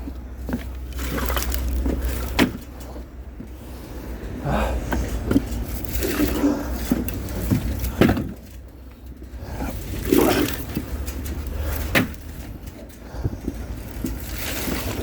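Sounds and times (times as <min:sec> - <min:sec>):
firewood logs knocking: 0:00.0 - 0:02.7, 0:06.8 - 0:08.6, 0:11.6 - 0:12.6
low steady rumble: 0:00.0 - 0:15.0.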